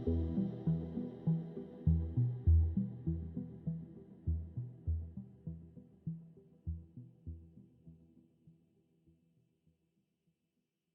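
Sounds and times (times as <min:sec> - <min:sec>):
pulsing deep bass notes: 0:00.0 - 0:05.6.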